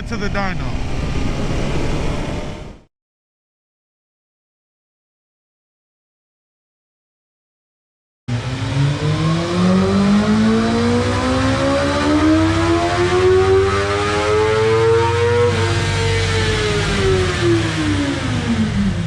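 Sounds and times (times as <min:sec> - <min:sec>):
motorcycle engine revving: 0:00.0 - 0:02.9, 0:08.3 - 0:19.0.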